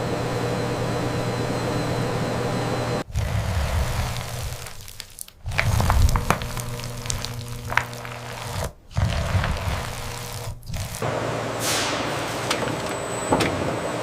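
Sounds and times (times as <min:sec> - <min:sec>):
machinery humming: 0:00.0 - 0:14.0.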